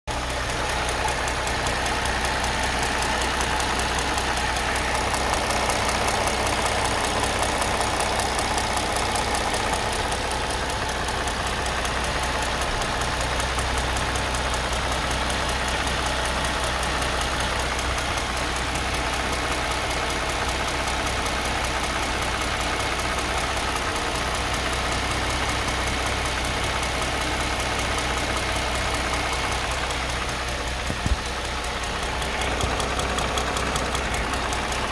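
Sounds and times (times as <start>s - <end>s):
rapid engine tapping: 0.1s - 34.9s
engine running at low revs: 26.1s - 34.9s.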